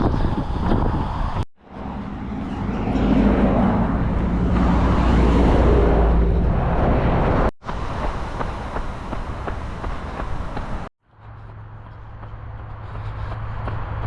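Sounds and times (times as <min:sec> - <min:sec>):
motor vehicle rumble: 0:00.0 - 0:14.0
footsteps running on pavement: 0:07.6 - 0:14.0.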